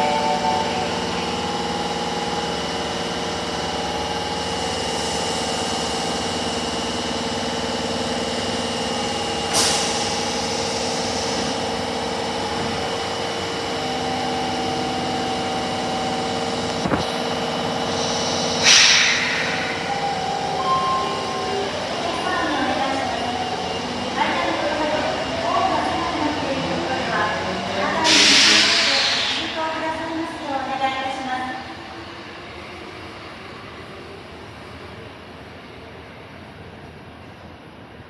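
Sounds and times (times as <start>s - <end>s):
subway car electrical hum: 0.0s - 38.0s
hiss of released air: 9.5s - 10.2s, 17.8s - 20.6s, 28.0s - 29.6s.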